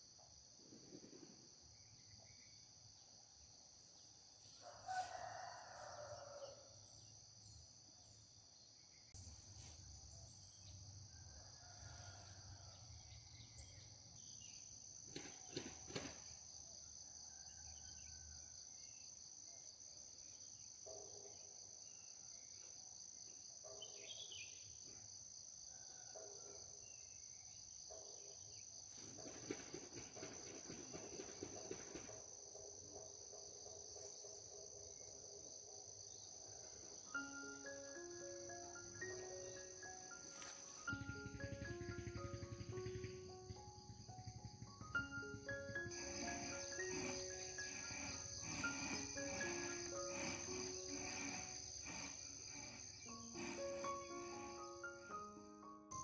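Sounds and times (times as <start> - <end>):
rooster crowing: 4.6 - 6.8, 11.1 - 13.2, 44.4 - 54.4
crickets buzzing: 26.8 - 55.3.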